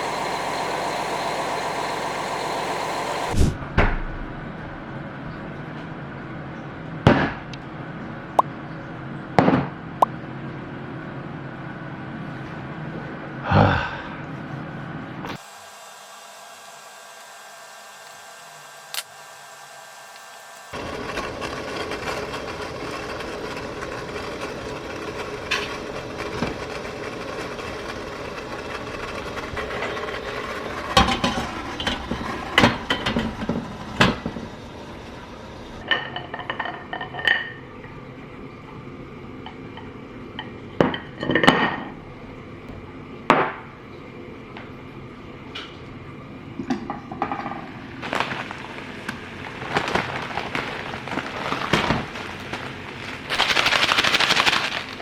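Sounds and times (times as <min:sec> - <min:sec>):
steady background noise: 0:00.0 - 0:07.0, 0:20.7 - 0:55.0.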